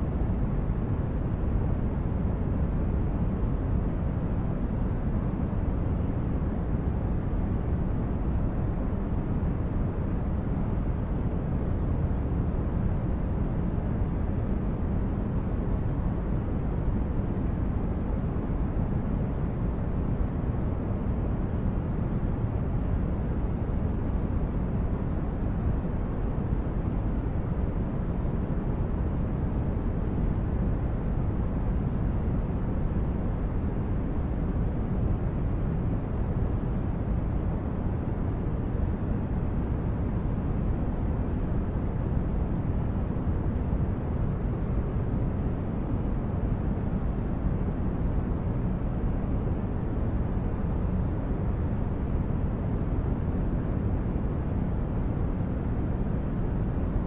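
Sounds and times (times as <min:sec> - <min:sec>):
deep rumble of brown noise: 0:00.0 - 0:57.0.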